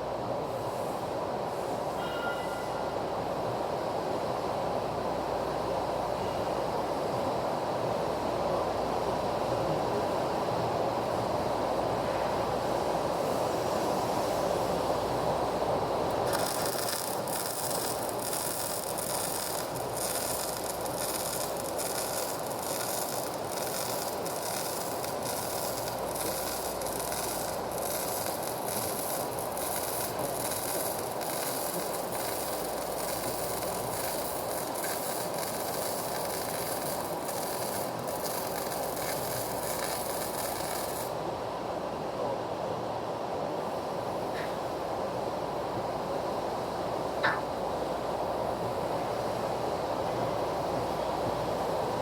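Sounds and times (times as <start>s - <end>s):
welding arc crackling: 16.0s - 41.2s.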